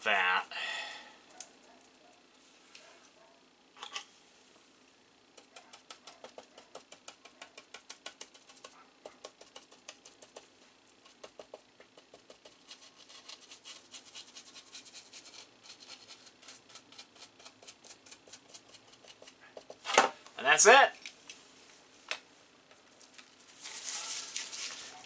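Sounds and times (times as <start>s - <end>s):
brush scrubbing circuit board: 11.0s - 19.7s.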